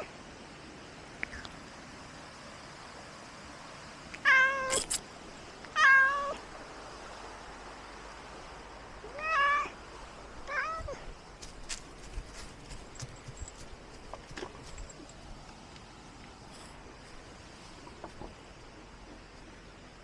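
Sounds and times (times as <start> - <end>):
cat meowing: 4.2 - 5.0, 5.8 - 6.4, 9.1 - 9.8, 10.5 - 11.0.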